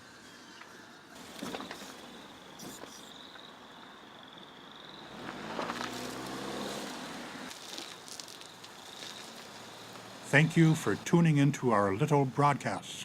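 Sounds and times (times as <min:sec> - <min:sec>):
car engine revving up: 0:05.0 - 0:07.5.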